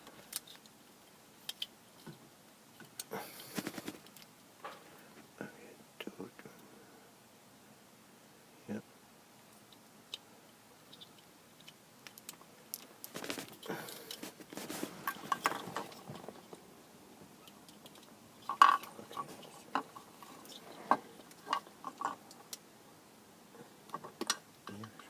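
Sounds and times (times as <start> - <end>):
wires and connectors rustling: 0.0 - 2.2, 2.8 - 5.3, 10.9 - 22.6.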